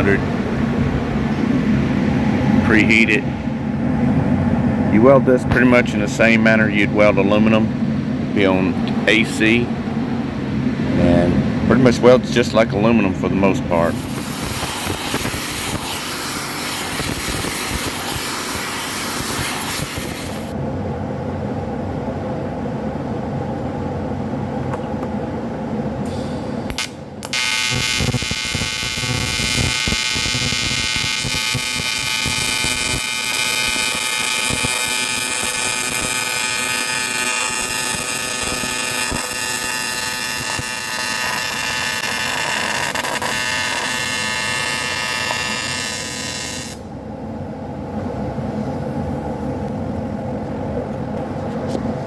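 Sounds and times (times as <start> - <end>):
low hum: 0.0 - 52.0
welding arc buzzing hiss: 13.7 - 20.6, 26.0 - 46.9.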